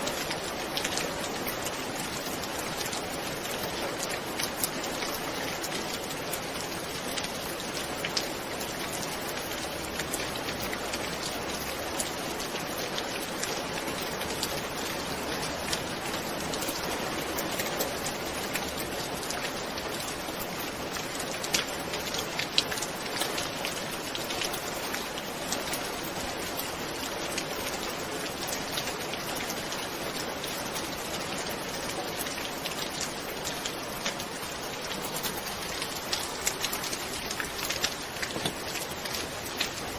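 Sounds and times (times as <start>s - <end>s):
heavy rainfall hiss: 0.0s - 39.9s
raindrops ticking: 0.0s - 39.9s.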